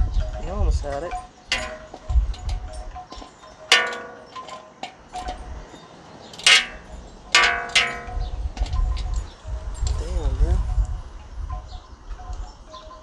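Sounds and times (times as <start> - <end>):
tools striking metal frame: 0.9 - 5.5, 6.3 - 9.2.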